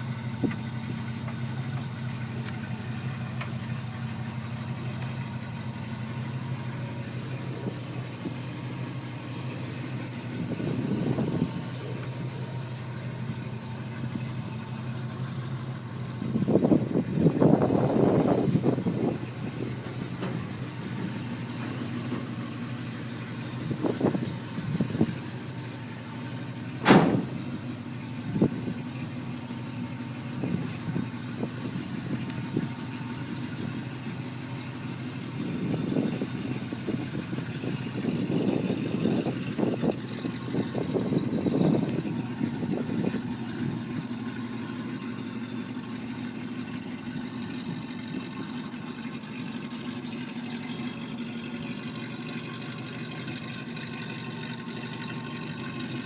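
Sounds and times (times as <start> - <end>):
car engine idling: 0.0 - 56.0.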